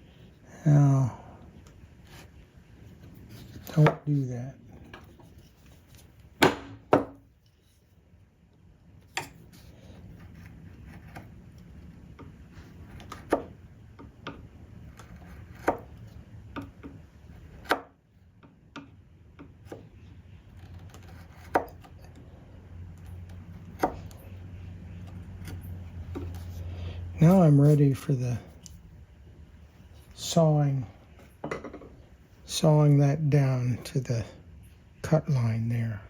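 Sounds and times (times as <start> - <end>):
chisel knocks into wood: 6.4 - 7.2.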